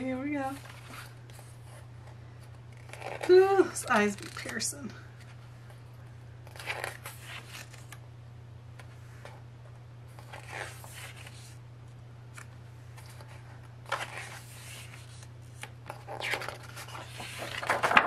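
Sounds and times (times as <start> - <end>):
low electrical hum: 0.0 - 18.0
paper and card rustling: 0.2 - 5.4, 6.5 - 8.0, 10.1 - 11.6, 12.3 - 18.0.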